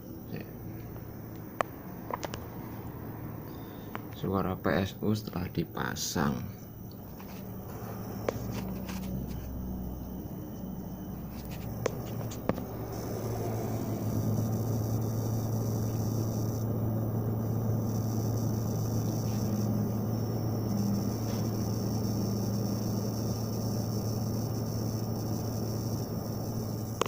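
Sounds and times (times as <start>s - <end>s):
power supply mains hum: 0.0s - 27.0s
crackling sizzling noise: 11.1s - 27.0s.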